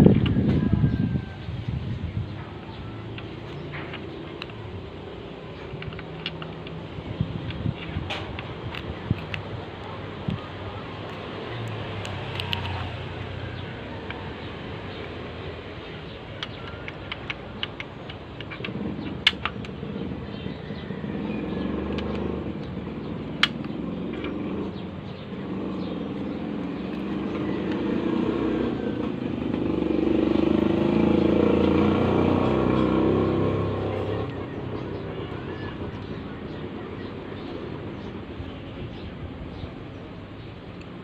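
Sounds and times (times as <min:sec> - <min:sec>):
motor vehicle passing: 0:00.0 - 0:41.0
sharp clicks: 0:05.5 - 0:13.0, 0:15.8 - 0:19.9, 0:21.8 - 0:24.4.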